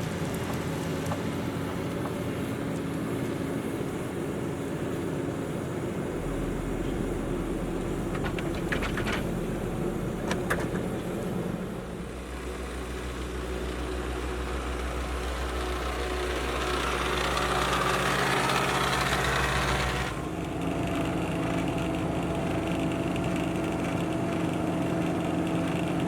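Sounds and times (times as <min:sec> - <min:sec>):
heavy diesel engines running: 0:00.0 - 0:26.0
metallic clicks and clanks: 0:06.2 - 0:12.0.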